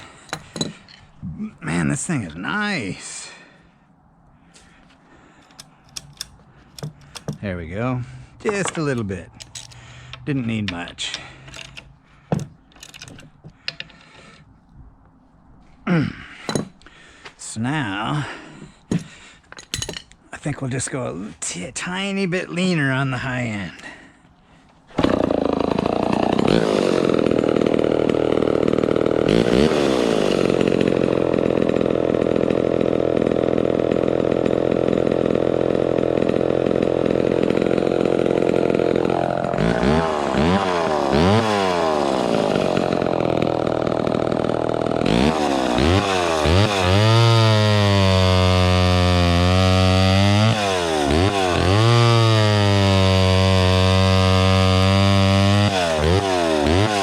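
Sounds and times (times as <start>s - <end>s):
chainsaw at full throttle: 24.9s - 57.0s.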